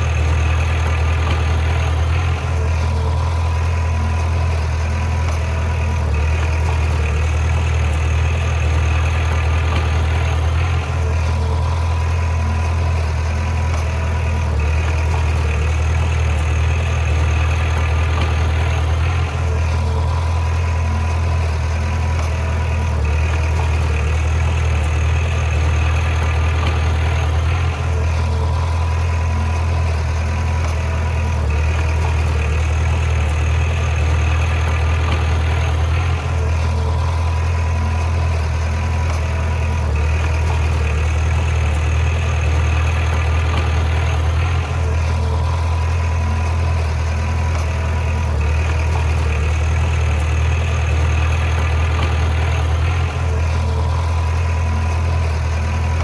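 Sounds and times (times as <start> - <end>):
heavy diesel engine running: 0.0 - 56.0.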